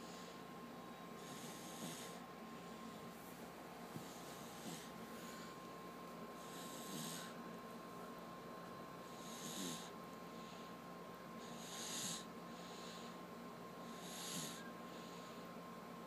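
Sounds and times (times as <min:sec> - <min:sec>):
baby snoring softly: 0:01.2 - 0:02.3, 0:04.0 - 0:05.4, 0:06.4 - 0:07.4, 0:09.0 - 0:10.7, 0:11.4 - 0:13.2, 0:13.8 - 0:15.5.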